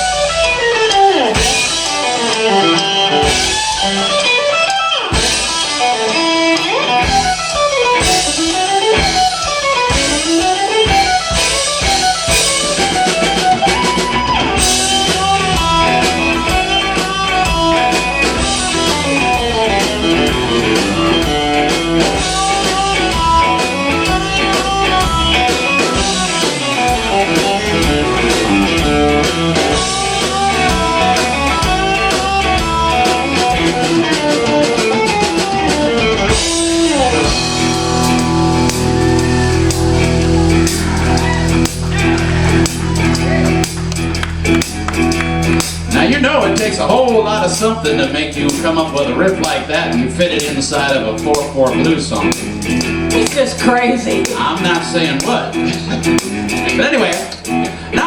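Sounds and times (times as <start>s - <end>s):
drums: 0.0s - 58.0s
electric guitar runs: 0.0s - 58.0s.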